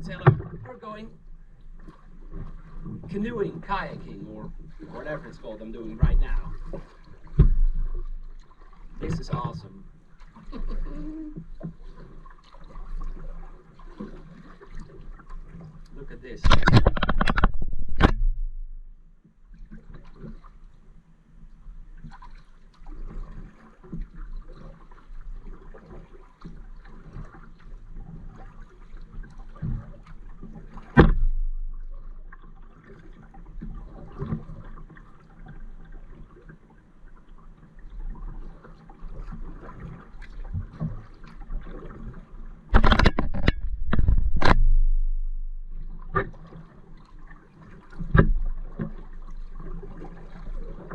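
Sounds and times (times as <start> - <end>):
water dripping and lapping: 0.0 - 50.9
sharp knocks: 16.4 - 19.0, 30.9 - 32.4, 42.7 - 46.3.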